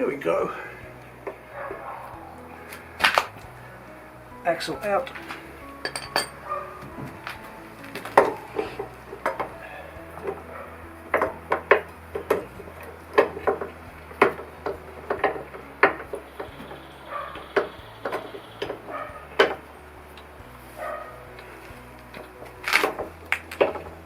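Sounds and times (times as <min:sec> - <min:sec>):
metallic clinks and knocks: 0:04.9 - 0:23.9.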